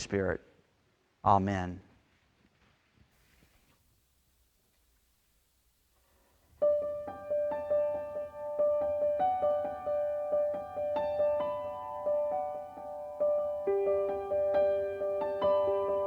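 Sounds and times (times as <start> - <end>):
piano playing: 6.6 - 16.0.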